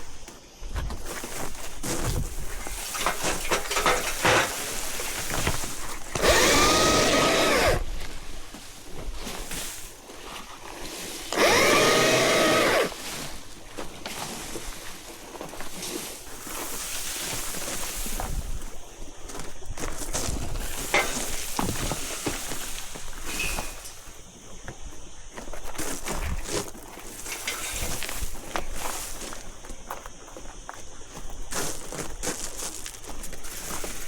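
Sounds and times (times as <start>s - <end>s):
branches rustling and clicking: 0.0s - 30.7s
battery chainsaw motor whine: 6.0s - 8.1s, 11.3s - 13.3s.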